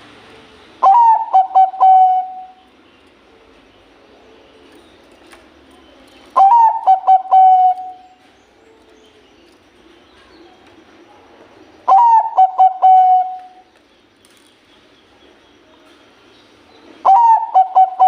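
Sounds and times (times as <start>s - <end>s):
dove cooing: 0.8s - 2.6s, 6.4s - 8.1s, 11.9s - 13.6s, 17.0s - 18.0s.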